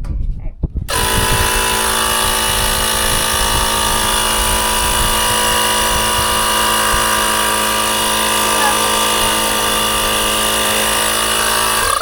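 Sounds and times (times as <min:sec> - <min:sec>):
electric air pump motor running: 0:00.9 - 0:12.0.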